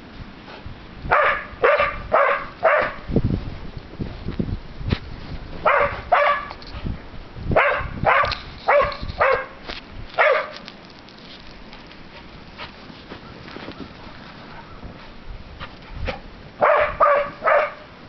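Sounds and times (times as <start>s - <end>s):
young dog play barking: 1.1s - 3.1s, 5.6s - 6.6s, 7.6s - 9.6s, 10.2s - 10.6s, 16.0s - 17.9s.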